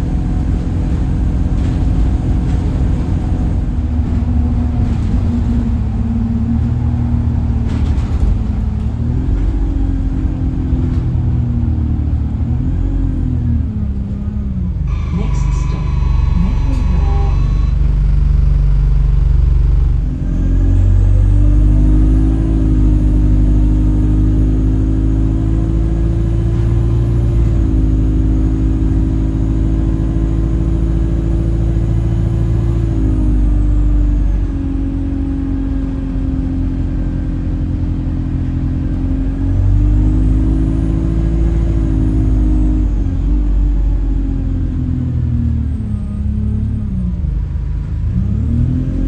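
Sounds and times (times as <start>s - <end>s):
bus engine rumble: 0.0s - 49.0s
horn-like droning tone: 14.8s - 20.5s.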